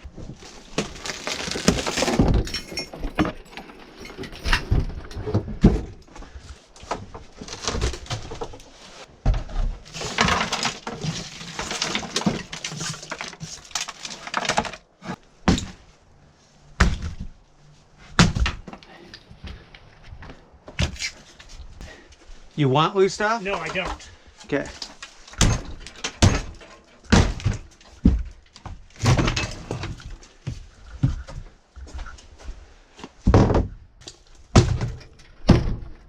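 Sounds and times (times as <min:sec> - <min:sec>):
debris crashing and scraping: 0:00.2 - 0:06.4, 0:07.0 - 0:15.9, 0:23.3 - 0:30.2.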